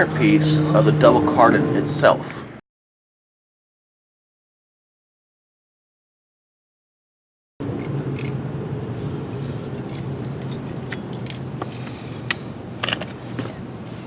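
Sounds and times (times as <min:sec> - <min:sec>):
steady low rumble: 0:07.6 - 0:14.0.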